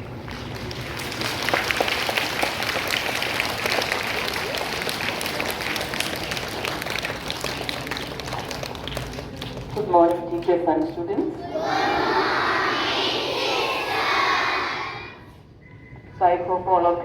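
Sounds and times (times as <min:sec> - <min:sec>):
crowd applauding: 0:00.1 - 0:09.8.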